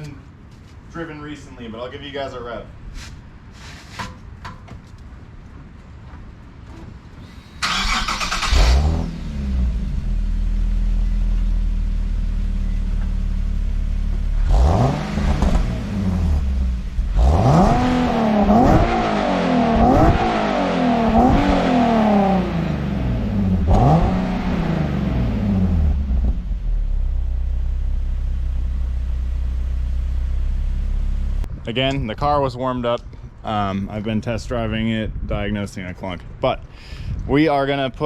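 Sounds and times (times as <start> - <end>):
car engine starting and revving: 7.3 - 31.5.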